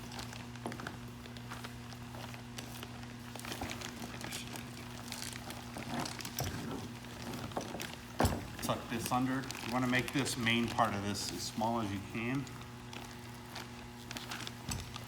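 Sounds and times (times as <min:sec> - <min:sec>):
low electrical hum: 0:00.0 - 0:15.0
plastic sleeve crinkling: 0:00.0 - 0:15.0.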